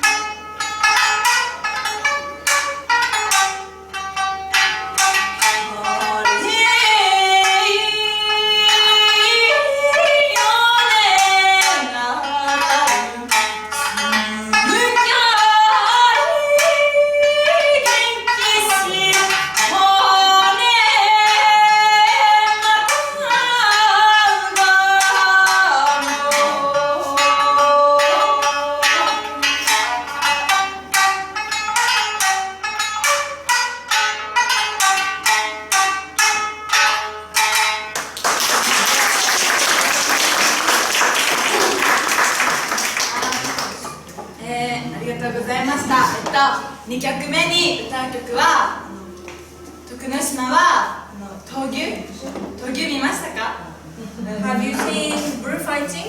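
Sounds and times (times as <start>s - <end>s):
plucked shamisen: 0.0s - 44.4s.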